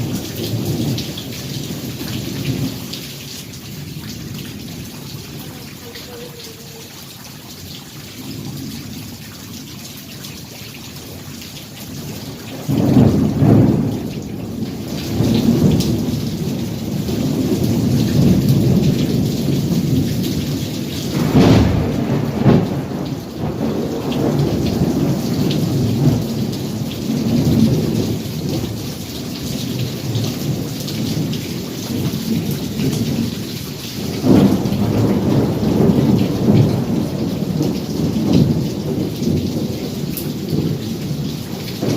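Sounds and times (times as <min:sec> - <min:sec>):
rolling thunder rumble: 0:00.0 - 0:05.8, 0:12.0 - 0:41.9
heavy rain: 0:00.0 - 0:41.9
thunder clap: 0:12.4 - 0:33.4, 0:34.0 - 0:41.9.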